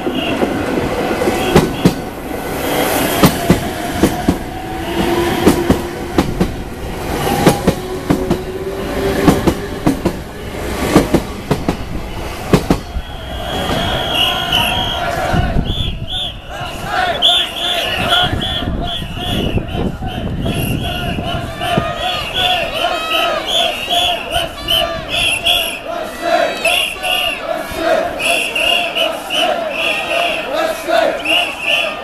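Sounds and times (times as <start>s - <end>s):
train rolling rumble: 0.0s - 17.0s, 17.8s - 25.7s
train wheels clacking over rail joints: 3.2s - 14.5s.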